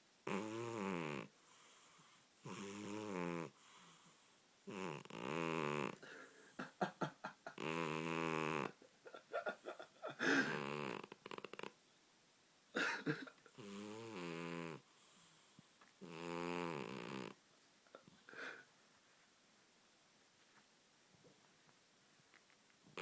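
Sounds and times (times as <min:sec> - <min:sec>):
cat snoring: 0:00.2 - 0:06.1, 0:07.6 - 0:08.8, 0:10.3 - 0:11.7, 0:13.6 - 0:17.4.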